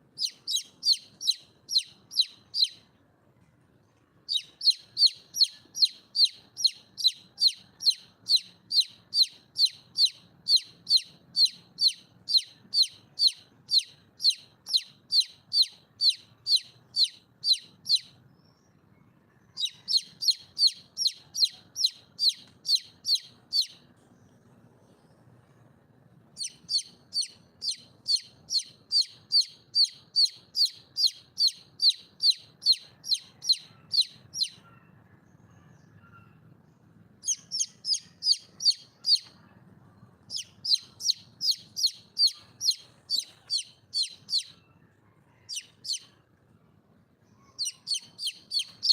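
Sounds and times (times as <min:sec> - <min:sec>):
junglefowl hen calling: 0:19.3 - 0:23.9, 0:26.4 - 0:35.0, 0:37.2 - 0:39.6, 0:40.3 - 0:46.2.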